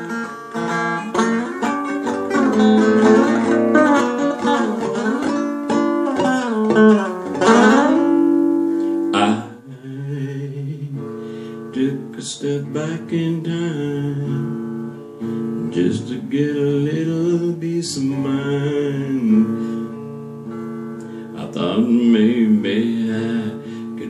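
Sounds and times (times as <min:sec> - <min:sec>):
blues guitar with bending notes: 0:00.0 - 0:24.0
person singing: 0:09.0 - 0:14.5, 0:15.6 - 0:20.0, 0:21.3 - 0:24.0.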